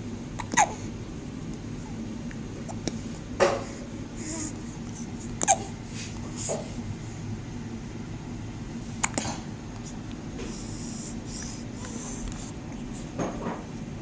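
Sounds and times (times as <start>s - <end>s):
baby hiccuping: 0.4s - 0.8s.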